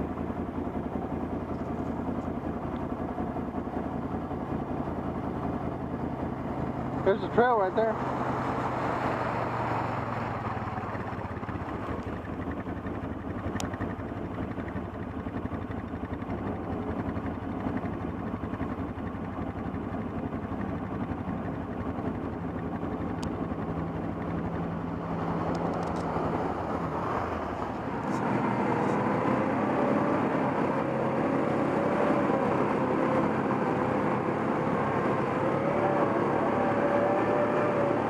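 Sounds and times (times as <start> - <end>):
atv engine running: 0.0 - 38.0.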